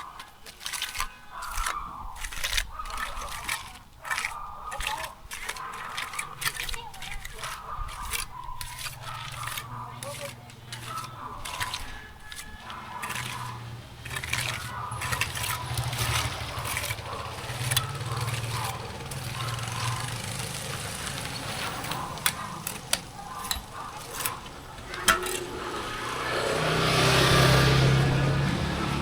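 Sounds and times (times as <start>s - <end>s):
sharp clicks and knocks: 2.5s - 27.9s
vehicle engine humming: 6.2s - 29.0s
vehicle passing close: 8.9s - 29.0s.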